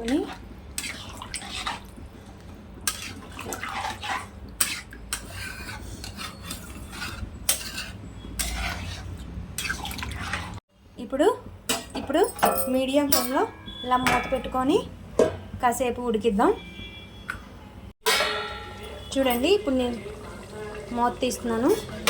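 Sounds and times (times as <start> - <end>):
spoon scraping a pot: 0.0 - 2.0, 2.8 - 10.6
liquid sloshing: 0.0 - 5.8, 8.4 - 10.6.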